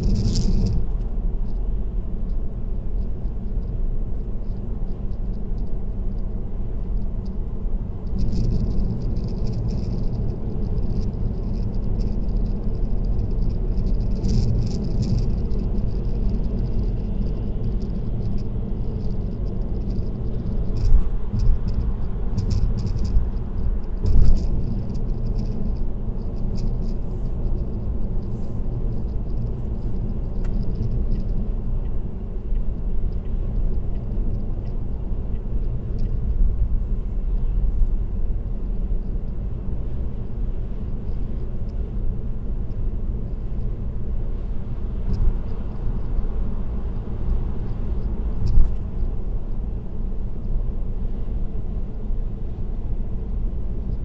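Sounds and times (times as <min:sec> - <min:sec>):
road and tyre rumble: 0:00.0 - 0:54.0
light rattling: 0:08.1 - 0:31.5.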